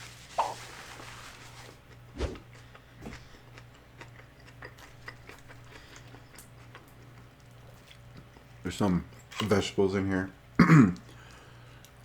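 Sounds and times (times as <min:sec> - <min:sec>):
chewing crunches and mouth clicks: 0:01.9 - 0:09.3.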